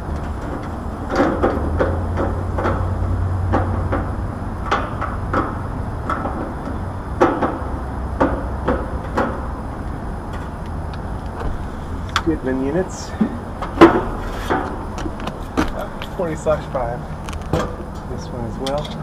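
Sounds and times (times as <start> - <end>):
steady low rumble: 0.0 - 19.0
tools knocking on metal panel: 0.4 - 9.5.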